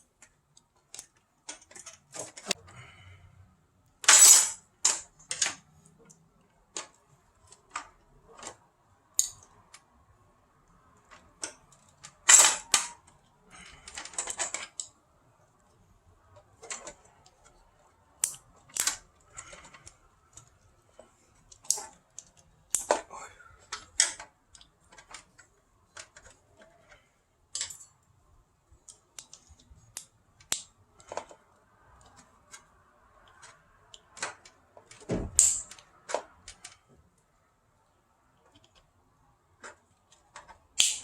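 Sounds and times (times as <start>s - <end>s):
fan parts clicking and knocking: 28.8s - 37.2s.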